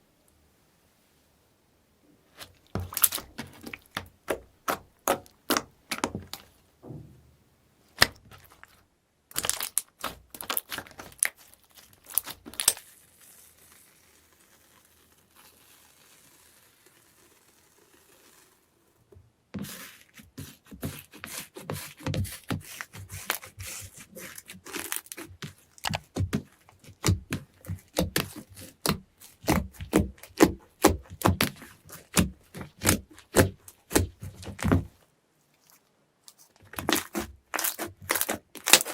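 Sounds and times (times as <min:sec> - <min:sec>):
slime crackling and popping: 0:02.4 - 0:06.5, 0:07.9 - 0:18.6, 0:21.8 - 0:34.8, 0:36.6 - 0:38.9.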